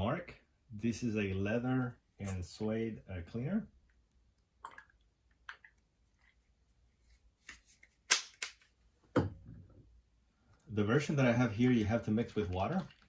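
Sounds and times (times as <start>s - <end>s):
bottle and tools clicking: 4.6s - 6.3s.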